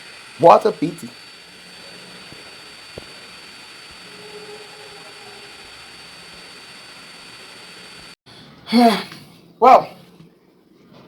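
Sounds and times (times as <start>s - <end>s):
faint hiss: 0.0s - 8.2s
high-pitched whine: 0.0s - 8.2s.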